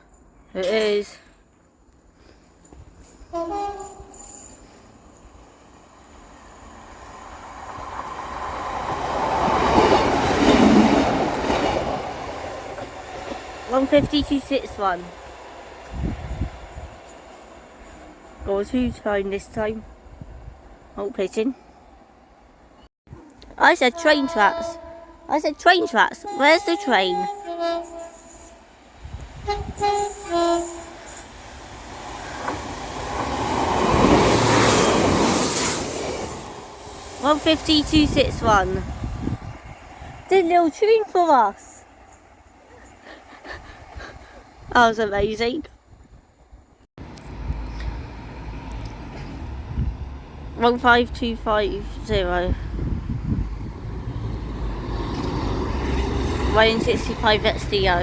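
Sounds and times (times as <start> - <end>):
train passing on rails: 0.1 - 22.9, 23.5 - 58.0
train two-tone horn: 3.3 - 4.7, 23.9 - 31.3
wheels clattering on track: 47.0 - 52.2, 53.4 - 58.0.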